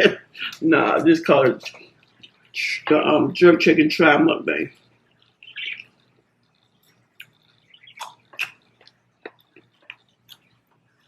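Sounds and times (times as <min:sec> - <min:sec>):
chewing with wet mouth clicks: 0:05.2 - 0:10.9.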